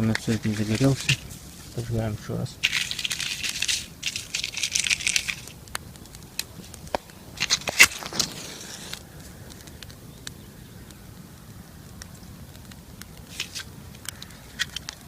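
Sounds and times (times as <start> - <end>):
kindling rustling: 0.0 - 9.0, 13.2 - 15.0
campfire crackling: 0.0 - 15.0.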